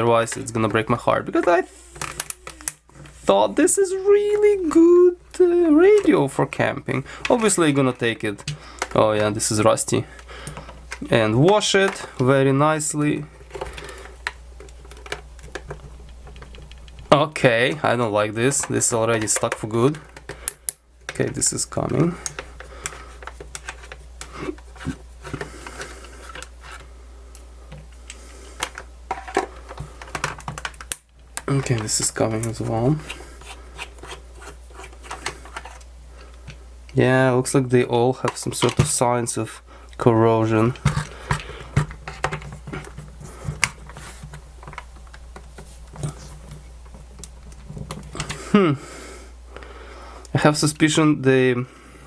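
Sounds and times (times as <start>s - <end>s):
screwdriver clicking and scraping plastic: 2.0s - 3.2s, 18.5s - 26.8s, 27.8s - 36.5s, 40.7s - 48.4s.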